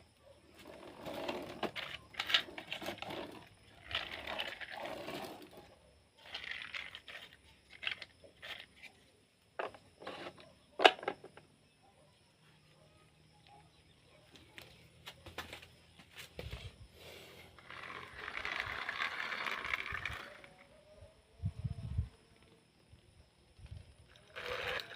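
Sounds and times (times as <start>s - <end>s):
plastic toys scraping and rattling: 0.5s - 11.3s, 17.4s - 20.7s, 24.0s - 24.9s.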